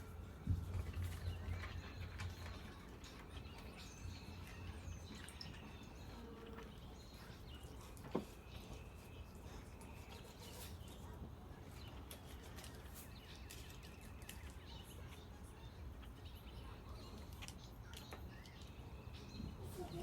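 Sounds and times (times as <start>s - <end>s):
birds chirping faintly: 0.0s - 20.0s.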